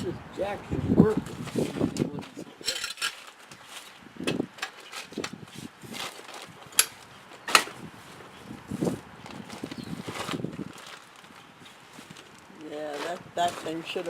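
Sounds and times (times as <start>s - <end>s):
metal parts knocking and clinking: 2.6s - 3.4s
metal scrape: 2.6s - 4.0s.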